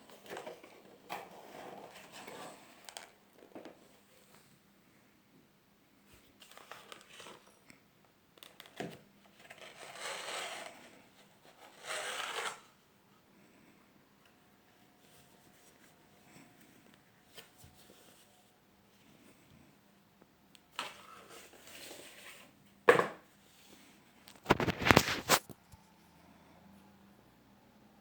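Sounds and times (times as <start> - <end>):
paper wrapping rustling: 24.3 - 25.5.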